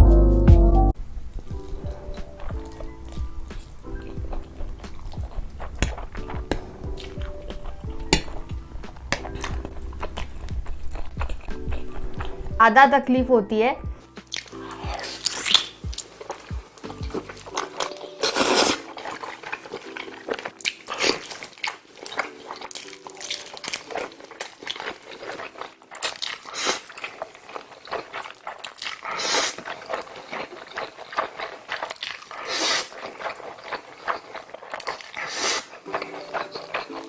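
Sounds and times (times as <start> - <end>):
wet chewing: 1.0 - 12.6, 14.0 - 37.0
mouth clicks: 1.6 - 12.4, 14.2 - 18.9
noodle slurps: 14.2 - 37.0.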